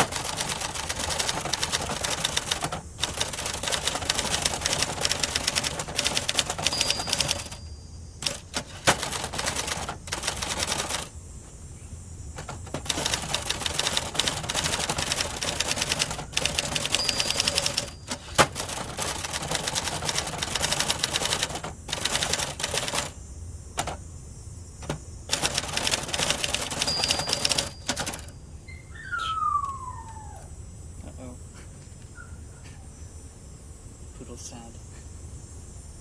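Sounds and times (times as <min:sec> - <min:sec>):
manual typewriter key strikes: 0:00.0 - 0:11.1, 0:12.4 - 0:23.2, 0:23.8 - 0:24.0, 0:24.8 - 0:28.3.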